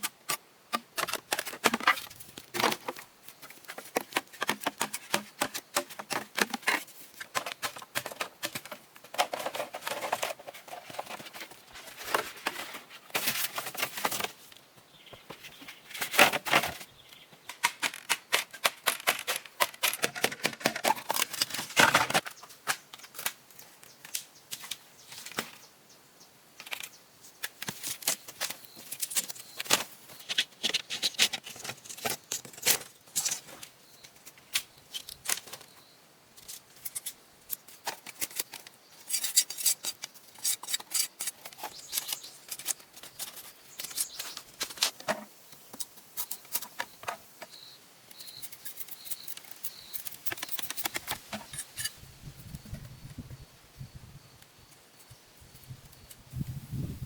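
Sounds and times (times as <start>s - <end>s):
sharp clicks and scraping: 17.4s - 23.4s, 36.4s - 52.0s.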